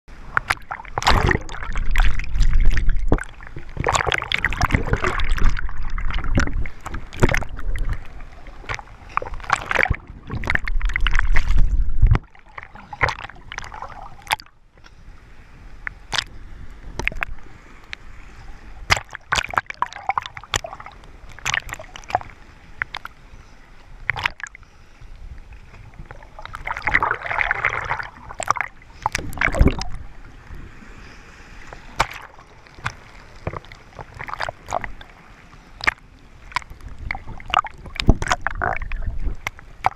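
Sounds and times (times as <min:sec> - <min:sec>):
ocean surge sloshing through rocks: 0:00.2 - 0:14.4, 0:25.6 - 0:35.9
waves splashing against rock: 0:00.2 - 0:14.5, 0:18.8 - 0:23.1, 0:24.0 - 0:24.6, 0:25.9 - 0:30.6, 0:31.5 - 0:39.9.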